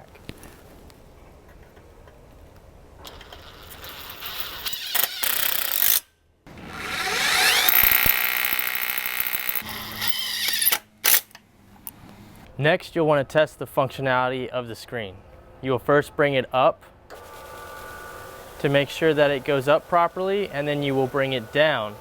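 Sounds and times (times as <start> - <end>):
power drill driving a screw: 3.1 - 11.4, 17.1 - 22.0.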